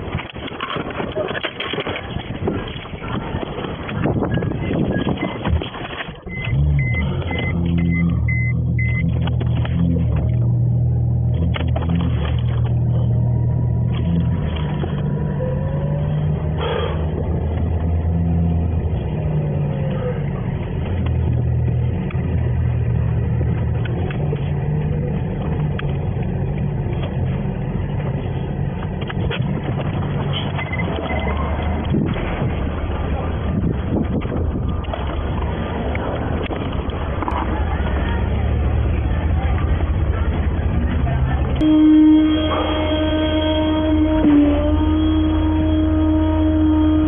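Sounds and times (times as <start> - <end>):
truck engine droning: 0.0 - 47.0
short high beeps: 6.3 - 9.2.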